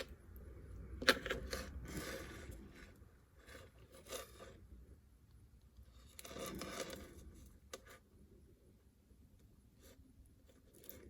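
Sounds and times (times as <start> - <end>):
small metal tools scraping: 1.0 - 4.6, 5.9 - 8.0.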